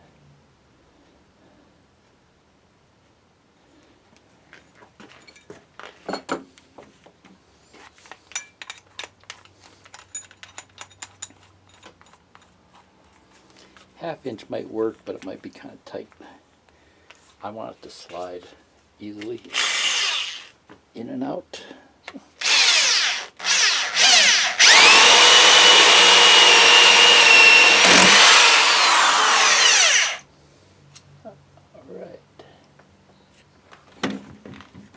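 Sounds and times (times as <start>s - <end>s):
metal drill bits clinking: 23.6s - 30.2s.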